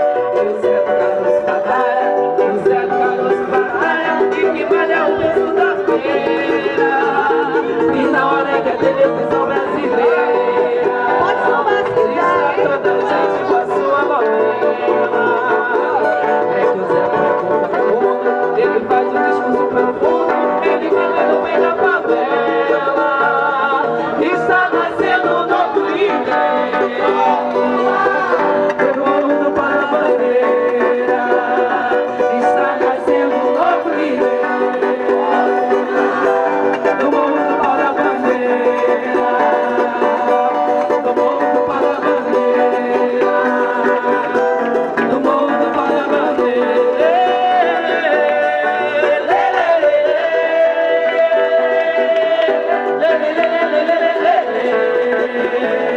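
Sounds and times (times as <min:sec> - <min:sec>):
live band playing samba: 0:00.0 - 0:55.9
plucked string instruments: 0:00.0 - 0:55.9.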